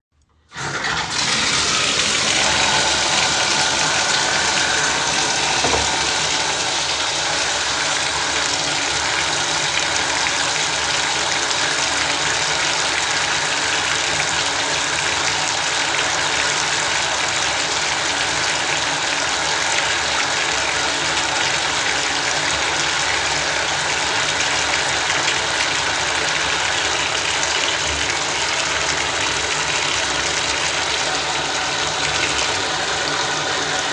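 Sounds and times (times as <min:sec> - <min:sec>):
bathtub tap running into tub: 0:00.9 - 0:16.6.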